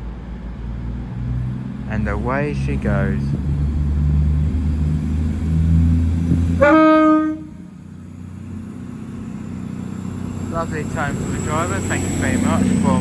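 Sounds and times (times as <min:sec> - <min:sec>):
diesel train engines running: 0:00.0 - 0:13.0
train horn note: 0:06.5 - 0:07.7.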